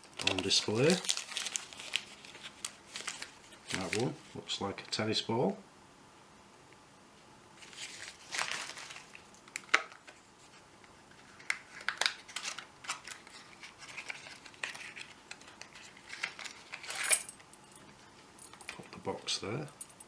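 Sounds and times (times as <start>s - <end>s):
packaging rustling and crinkling: 0.0s - 4.4s, 7.6s - 17.0s.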